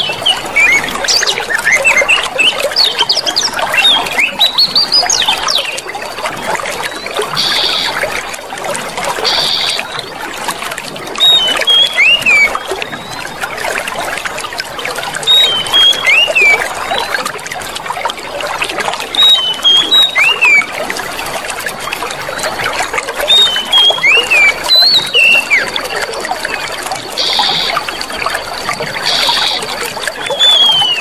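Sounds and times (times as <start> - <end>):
water trickling: 0.0 - 31.0
bird chirps: 6.9 - 8.0, 11.2 - 13.2, 15.3 - 17.2, 19.2 - 20.7, 23.3 - 27.9, 29.0 - 31.0.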